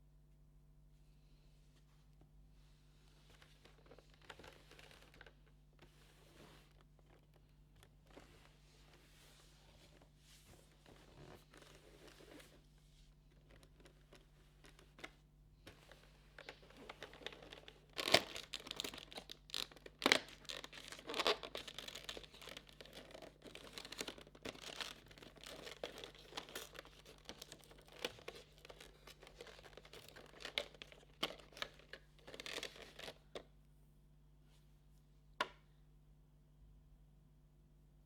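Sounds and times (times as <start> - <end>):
packaging crinkling and tearing: 16.4 - 33.4.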